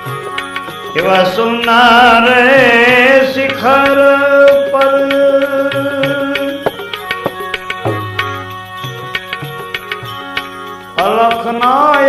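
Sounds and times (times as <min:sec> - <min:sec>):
tabla strokes: 0:02.4 - 0:12.0
held accompanying tones: 0:02.5 - 0:12.0.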